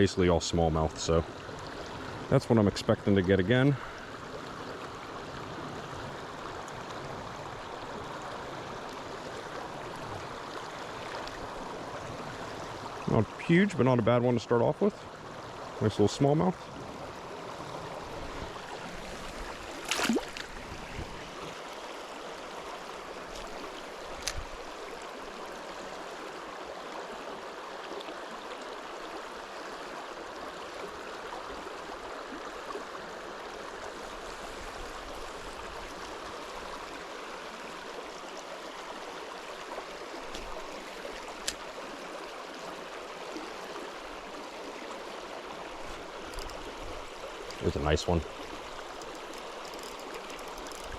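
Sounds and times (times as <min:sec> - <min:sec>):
river water rushing: 0:16.6 - 0:50.9
sharp clicks: 0:46.3 - 0:46.7, 0:48.9 - 0:50.9.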